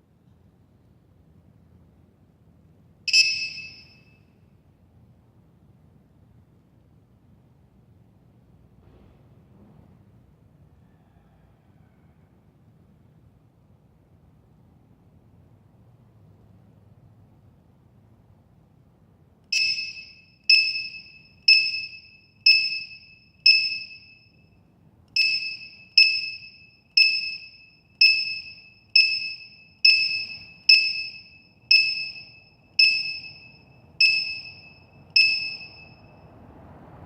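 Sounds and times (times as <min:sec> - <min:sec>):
alarm buzzer beeping: 0:03.1 - 0:04.1, 0:19.6 - 0:24.4, 0:25.2 - 0:36.2.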